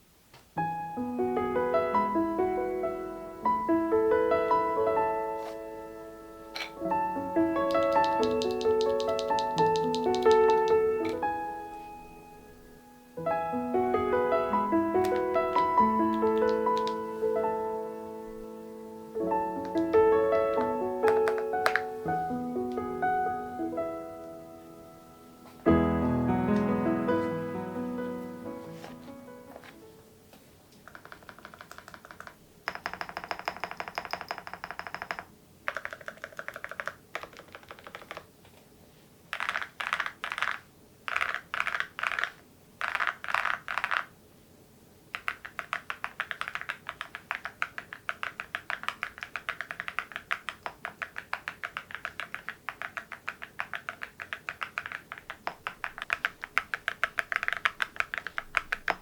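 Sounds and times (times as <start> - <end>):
mechanical keyboard typing: 7.3 - 11.4, 14.1 - 17.4, 19.4 - 22.8, 30.8 - 38.3, 39.3 - 44.1, 45.1 - 59.0.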